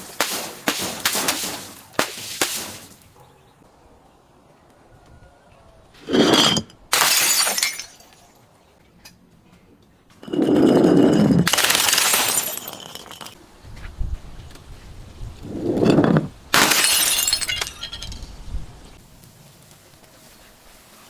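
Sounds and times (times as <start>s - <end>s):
glass bottles shattering: 6.1s - 8.3s, 10.2s - 13.4s, 15.9s - 18.2s.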